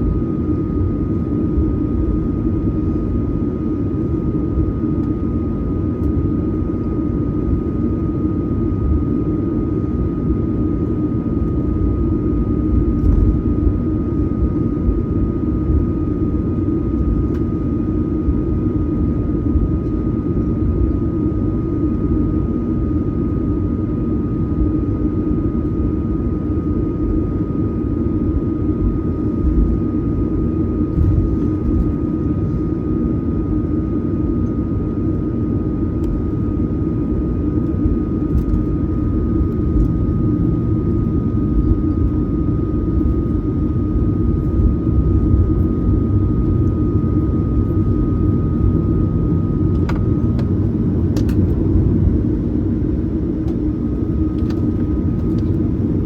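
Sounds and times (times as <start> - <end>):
aircraft engine and airflow rumble: 0.0 - 56.0
thin steady whine: 0.0 - 56.0.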